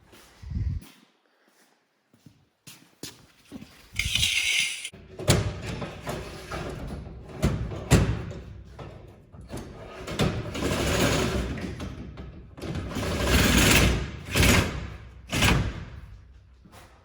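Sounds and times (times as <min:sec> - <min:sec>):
metal scraping: 0:04.0 - 0:05.0.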